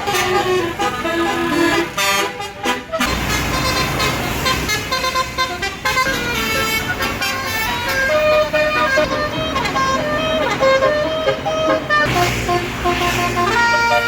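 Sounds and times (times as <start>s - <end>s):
bus horn playing a tune: 0.0s - 14.0s
low engine rumble: 0.0s - 14.0s.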